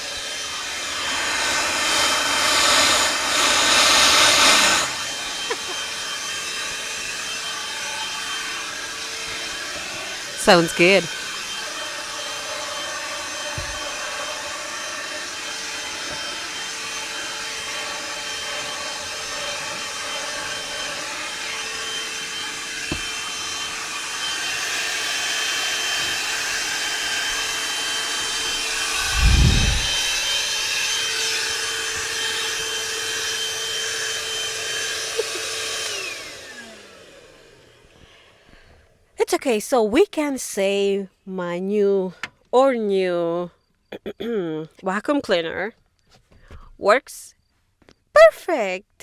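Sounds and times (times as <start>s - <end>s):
hand-held vacuum cleaner whine: 0.0s - 39.1s.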